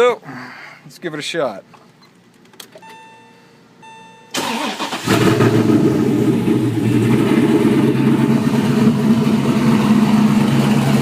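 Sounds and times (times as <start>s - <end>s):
faint beeps: 2.8s - 4.4s
loud engine idling: 5.0s - 11.0s.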